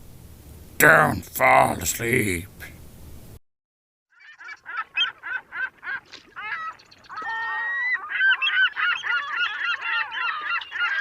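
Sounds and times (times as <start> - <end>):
seagulls squawking: 4.1 - 11.0.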